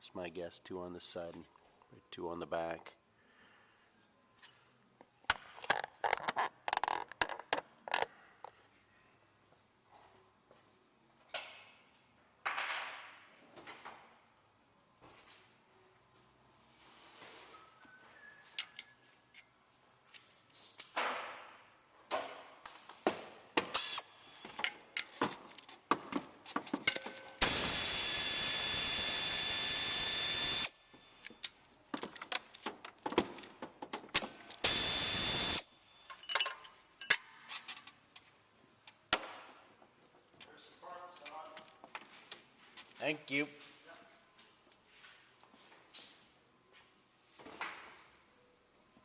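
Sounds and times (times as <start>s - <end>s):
power tool spinning bolts: 23.7s - 24.1s, 27.4s - 30.8s, 34.6s - 35.6s
tools clinking on metal: 36.1s - 37.4s.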